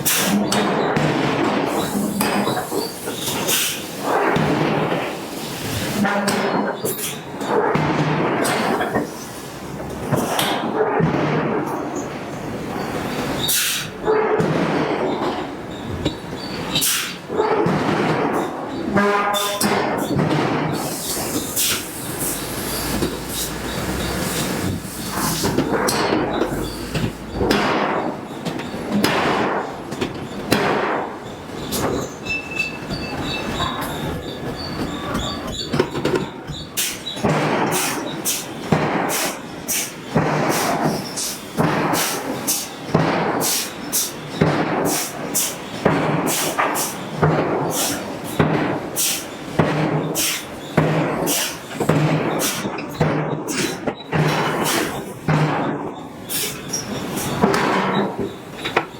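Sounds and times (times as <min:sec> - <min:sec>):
hiss and clatter: 0:00.0 - 0:58.9
high metallic squeal: 0:31.6 - 0:37.2.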